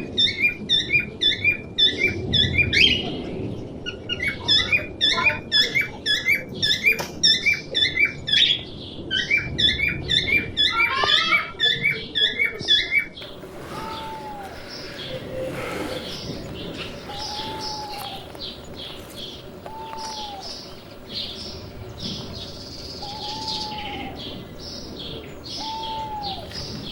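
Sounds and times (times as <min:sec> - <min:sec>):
high twittering: 0:13.2 - 0:26.9
small birds chirping: 0:13.2 - 0:26.9.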